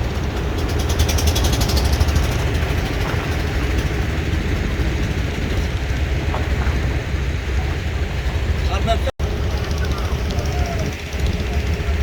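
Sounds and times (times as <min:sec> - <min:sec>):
heavy machinery rumbling: 0:00.0 - 0:12.0.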